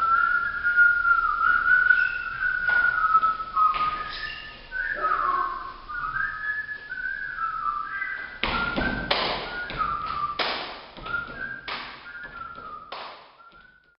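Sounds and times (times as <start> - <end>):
person whistling a tune: 0.0 - 14.0
body-percussion slaps: 2.6 - 4.3, 8.2 - 14.0.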